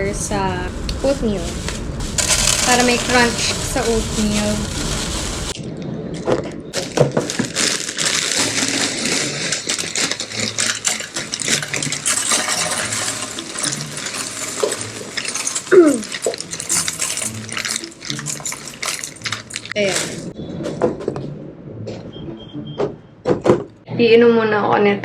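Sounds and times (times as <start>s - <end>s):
cereal rattling into plastic container: 2.2s - 4.6s, 6.8s - 20.3s.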